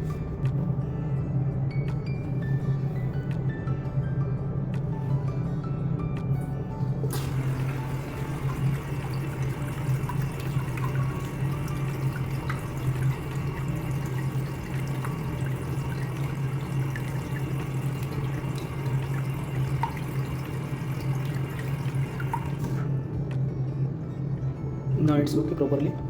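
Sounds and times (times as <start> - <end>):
steady low hum: 0.0 - 26.0
water running through urinal: 7.0 - 22.9.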